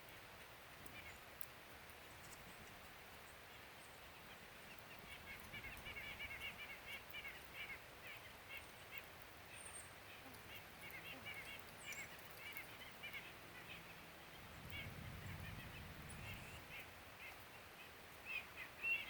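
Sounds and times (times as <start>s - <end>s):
steady outdoor hiss: 0.0s - 19.0s
flock of birds calling: 3.6s - 19.0s.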